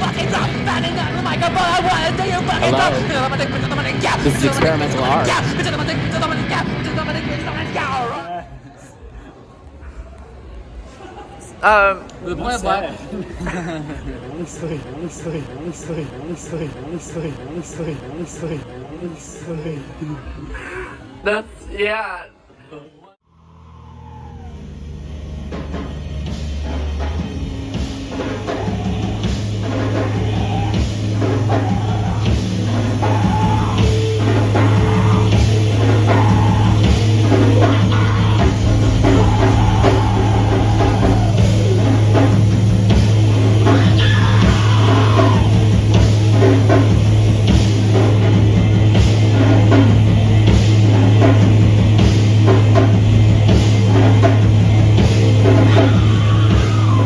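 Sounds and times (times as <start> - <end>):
heavy rock music: 0.0 - 8.2, 24.7 - 57.0.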